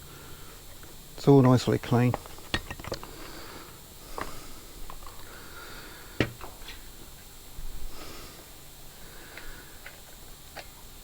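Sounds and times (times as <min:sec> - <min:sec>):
parts clicking and knocking: 0:00.7 - 0:03.1.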